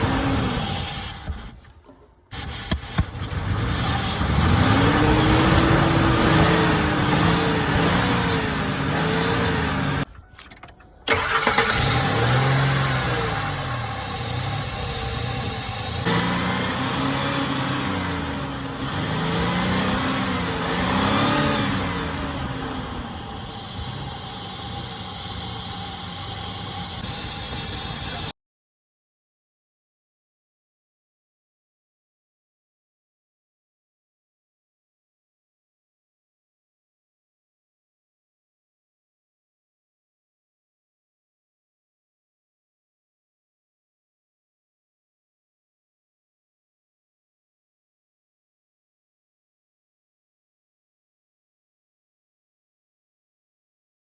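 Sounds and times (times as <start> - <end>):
truck engine revving: 0.0 - 1.6, 2.3 - 10.1, 11.1 - 28.3.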